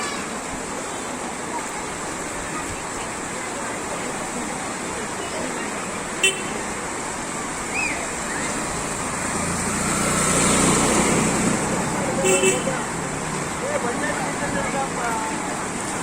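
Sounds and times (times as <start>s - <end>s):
vehicle engine approaching: 7.1s - 12.2s.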